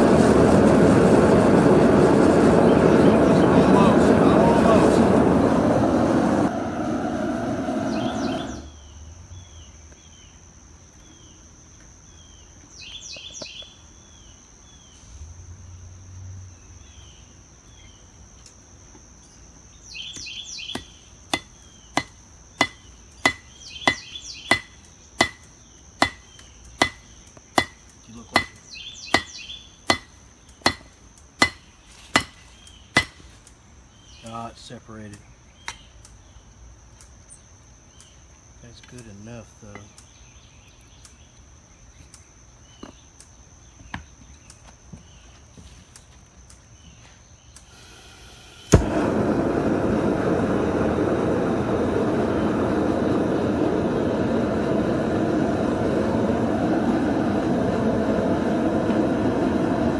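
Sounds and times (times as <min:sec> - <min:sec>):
gas forge burner roaring: 0:00.0 - 0:08.9, 0:47.6 - 0:59.9
birds chirping: 0:00.0 - 0:10.4.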